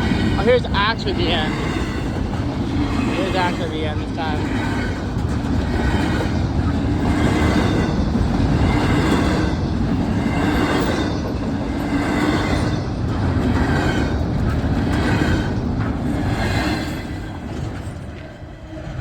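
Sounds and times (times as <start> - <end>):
freight train rumbling past: 0.0 - 19.0
high rail noise: 0.0 - 19.0.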